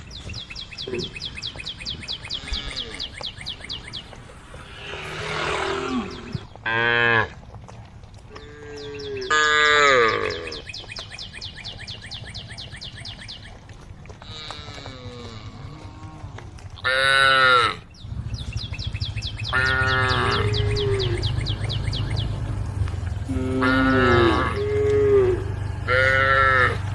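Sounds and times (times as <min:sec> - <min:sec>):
cows mooing: 0:02.1 - 0:07.5, 0:08.3 - 0:10.7, 0:14.2 - 0:17.9, 0:19.4 - 0:26.9.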